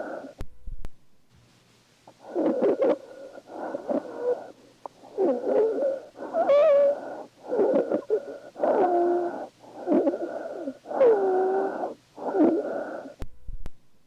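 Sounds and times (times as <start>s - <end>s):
wheezing lung sounds: 0.0s - 0.4s, 2.1s - 13.2s.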